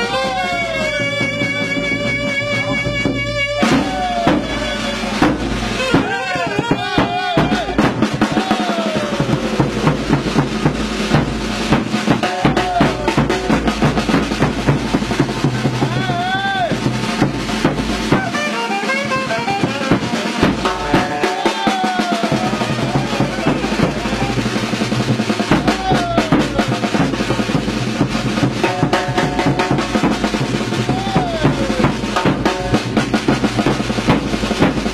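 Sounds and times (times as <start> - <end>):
fast drum beat: 0.0 - 34.9.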